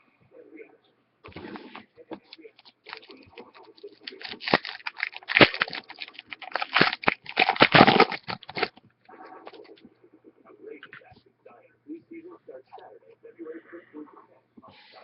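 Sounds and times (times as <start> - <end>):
foil wrapper tearing and crinkling: 2.6 - 8.8.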